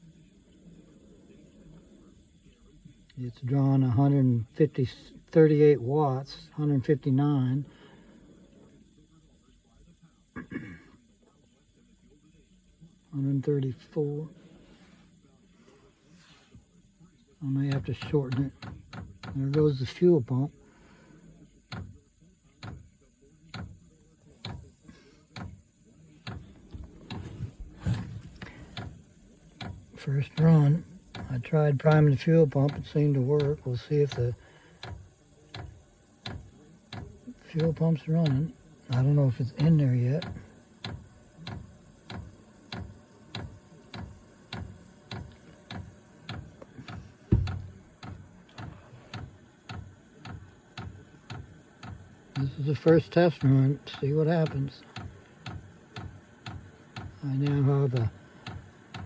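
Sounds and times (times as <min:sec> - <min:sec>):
fuel pump ticking: 0:17.4 - 0:59.0
thump: 0:47.3 - 0:47.7.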